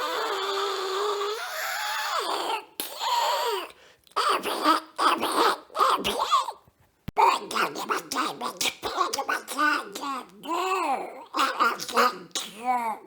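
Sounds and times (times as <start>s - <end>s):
squawky duck voice: 7.2s - 13.0s.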